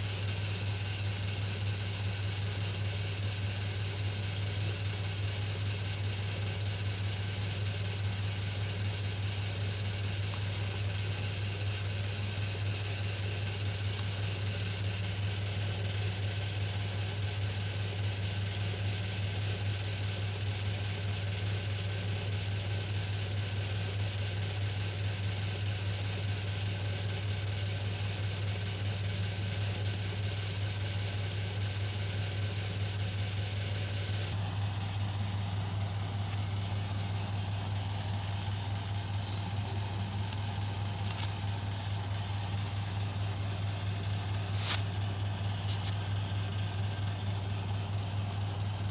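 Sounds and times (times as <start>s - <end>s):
low electrical hum: 0.0s - 18.7s, 32.9s - 48.9s.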